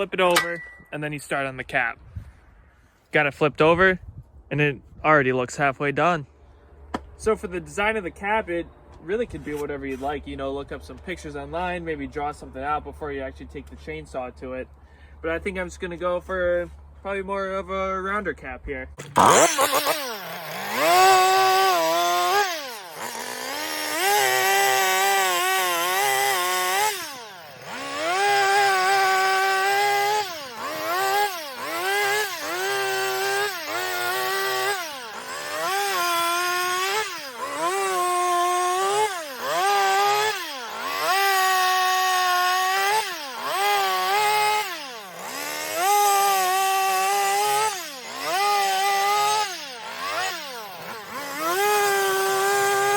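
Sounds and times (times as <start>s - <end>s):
chainsaw cutting wood: 19.0s - 52.9s.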